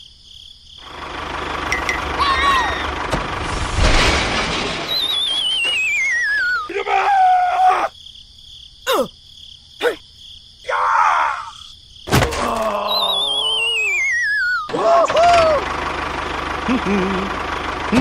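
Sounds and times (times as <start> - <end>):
short rustly burst: 3.3 - 5.9
warbling whistle-like tone: 4.9 - 6.7, 13.0 - 14.7.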